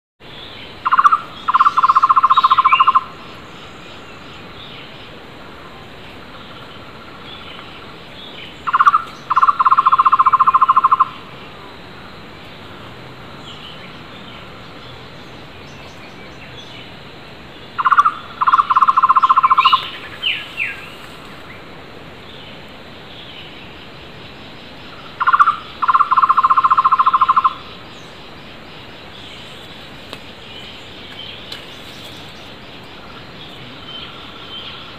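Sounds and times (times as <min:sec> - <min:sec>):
faint wild bird calls: 0:00.2 - 0:34.9
barbet call with trill: 0:00.8 - 0:03.1, 0:08.7 - 0:11.3, 0:17.8 - 0:20.0, 0:25.2 - 0:27.7.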